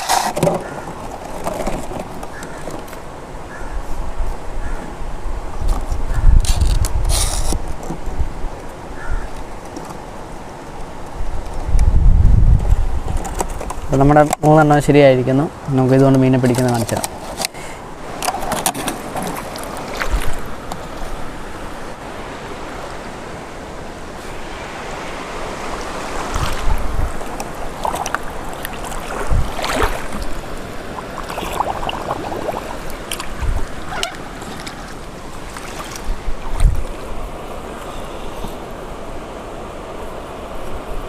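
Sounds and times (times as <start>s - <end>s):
river water running: 0.0s - 11.8s, 12.8s - 41.0s
water splashes: 17.9s - 40.4s.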